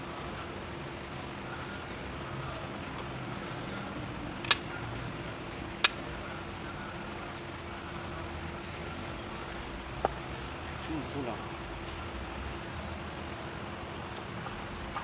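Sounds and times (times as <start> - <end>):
steady low hum: 0.0 - 15.0
sharp clicks: 4.4 - 4.7, 5.8 - 6.1.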